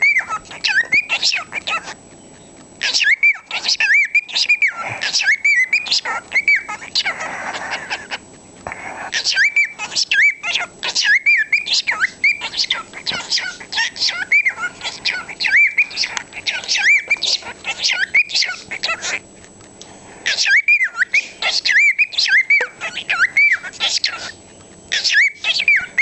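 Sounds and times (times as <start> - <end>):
cockatiel chirping and whistling: 0.0 - 8.2, 9.1 - 19.2, 20.3 - 26.0.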